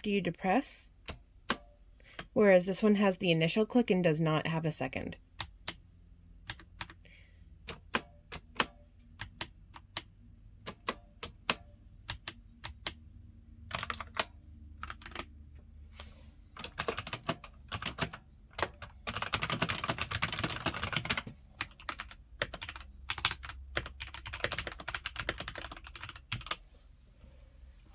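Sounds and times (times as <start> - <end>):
typing on mechanical keyboard: 13.6 - 15.3, 16.6 - 26.6.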